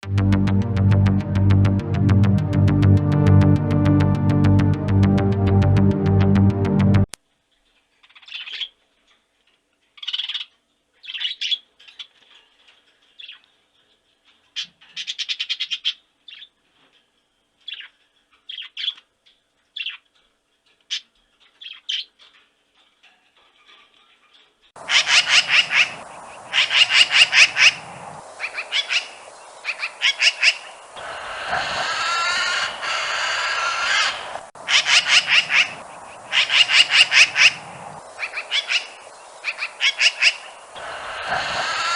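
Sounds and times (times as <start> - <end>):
background hiss: 24.7 - 41.9
animal chirps and squawks: 24.8 - 41.9
rapid trains of chirps: 24.8 - 41.9
warbling animal call: 24.8 - 41.9.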